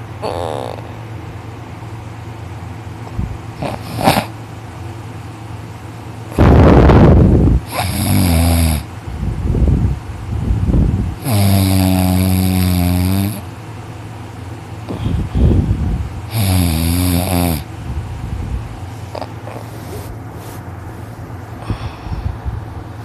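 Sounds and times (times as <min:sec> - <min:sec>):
person snoring: 0:00.2 - 0:01.0, 0:03.6 - 0:04.3, 0:07.6 - 0:08.9, 0:11.2 - 0:13.4, 0:16.3 - 0:17.7, 0:19.1 - 0:20.1.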